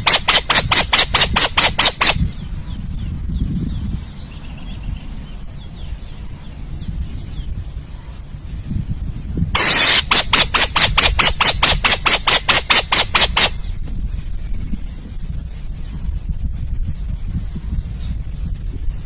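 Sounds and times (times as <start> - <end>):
owl hissing screeches: 9.6 - 13.7.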